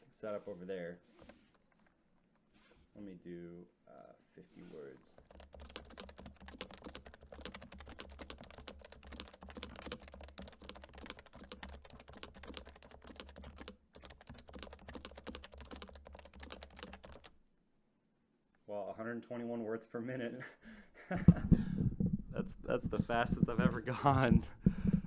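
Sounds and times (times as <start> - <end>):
fast typing on keyboard: 5.1 - 17.3.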